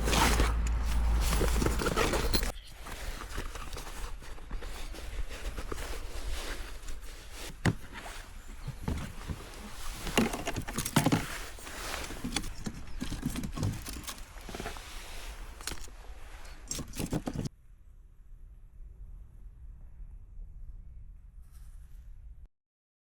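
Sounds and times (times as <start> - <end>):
camp gear clinking and knocking: 0.0 - 17.5.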